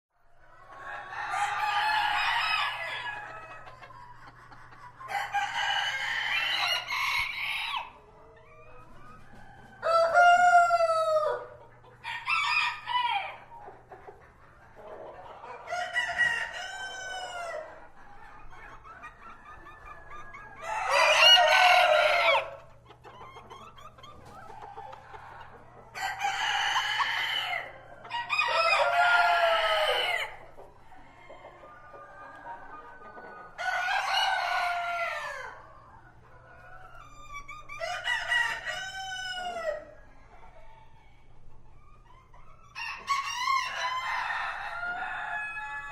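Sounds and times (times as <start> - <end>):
roosters crowing: 0.6 - 3.8, 5.1 - 8.0, 9.2 - 13.5, 15.4 - 17.8, 19.6 - 22.8, 24.4 - 32.2, 33.6 - 35.8, 36.8 - 41.2, 42.7 - 45.9.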